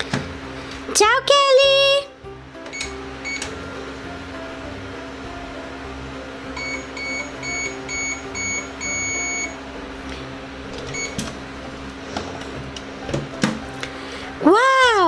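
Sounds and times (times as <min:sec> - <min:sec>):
toy microwave humming: 0:02.5 - 0:04.6, 0:06.5 - 0:09.7, 0:10.7 - 0:11.5
short beeps: 0:02.7 - 0:03.6, 0:06.6 - 0:09.6, 0:11.0 - 0:11.2
long beep: 0:06.6 - 0:09.6.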